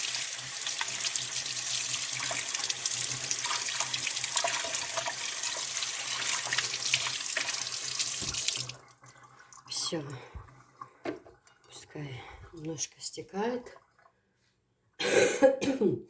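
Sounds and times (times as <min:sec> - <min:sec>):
tap water running into sink: 0:00.0 - 0:11.8.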